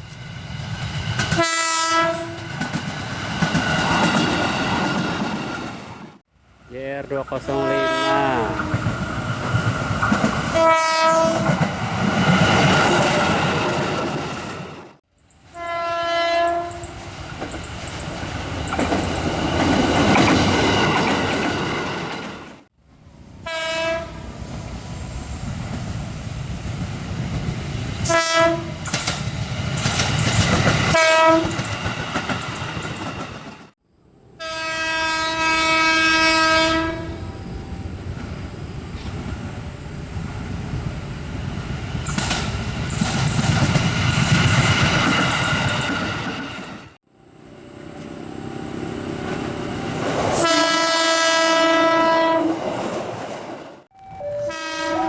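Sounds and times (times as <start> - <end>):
train rumble and rail clatter: 0.0 - 33.8, 34.4 - 55.0
train horn: 1.3 - 2.6, 7.3 - 8.8, 10.5 - 11.6, 15.5 - 17.0, 23.4 - 24.3, 28.0 - 28.8, 30.9 - 31.6, 34.4 - 37.4, 50.4 - 52.6, 53.9 - 55.0.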